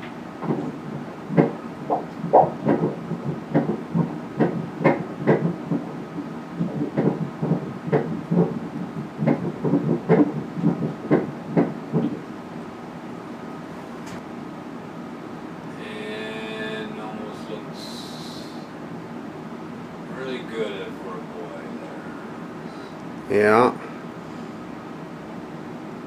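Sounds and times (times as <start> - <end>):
doppler heartbeat pulses: 0.4 - 12.3.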